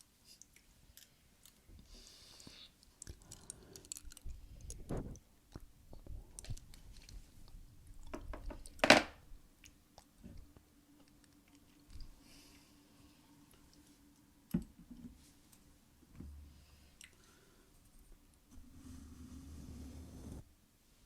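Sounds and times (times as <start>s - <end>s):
soft crunching clicks and crackles: 0.2s - 8.8s.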